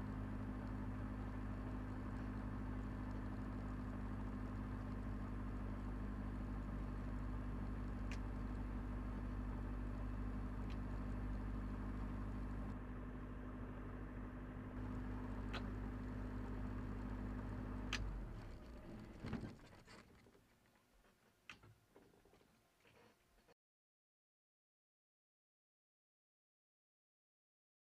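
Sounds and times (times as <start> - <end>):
diesel aircraft engine idling: 0.0 - 19.9.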